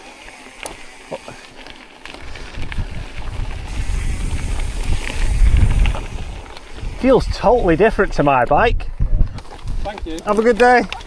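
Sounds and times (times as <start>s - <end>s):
mountain bike tyre noise: 0.0s - 11.0s
wind rumbling on microphone: 2.0s - 11.0s.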